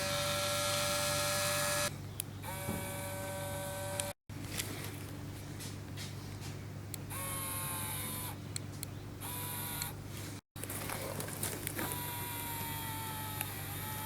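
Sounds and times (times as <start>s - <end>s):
small electric motor whining: 0.0s - 4.2s, 7.1s - 8.4s, 9.2s - 10.0s, 11.8s - 14.0s.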